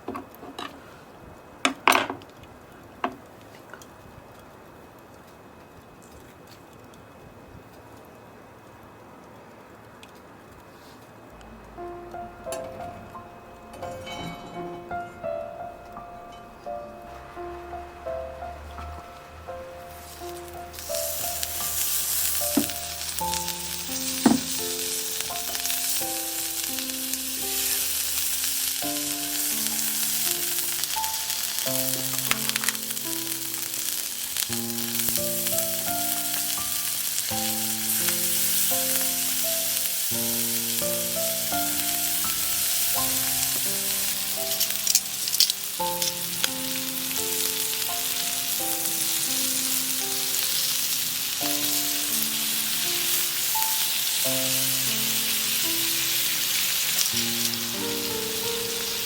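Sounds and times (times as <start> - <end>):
simple melody of held notes: 11.4 - 59.0
food sizzling on a grill: 16.7 - 59.0.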